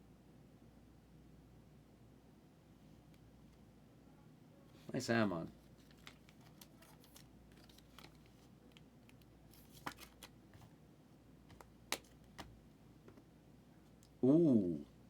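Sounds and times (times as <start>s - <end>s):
trading cards rustling and clicking: 5.6s - 10.7s, 11.5s - 12.6s.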